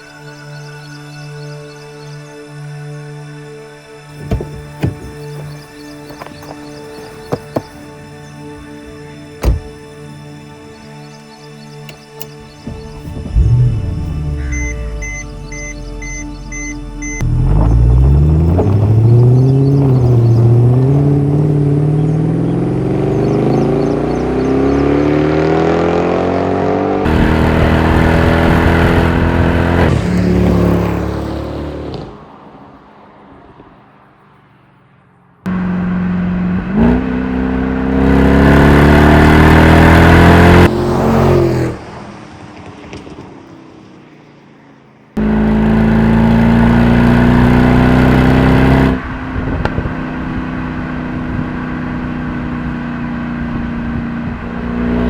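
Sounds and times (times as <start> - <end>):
car engine exhaust accelerating: 4.1 - 9.9, 11.9 - 32.2, 35.5 - 42.0, 45.2 - 55.0.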